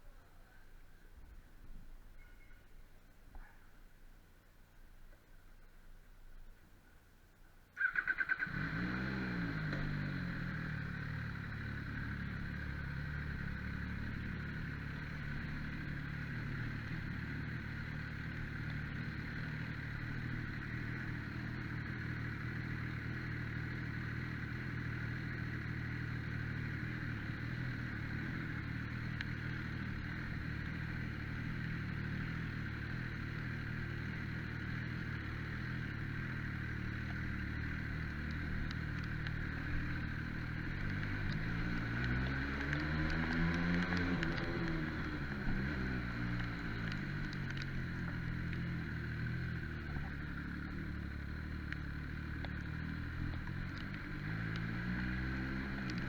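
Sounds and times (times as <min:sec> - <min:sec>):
motorcycle engine idling: 0:07.8 - 0:56.0
motorcycle engine starting: 0:07.8 - 0:56.0.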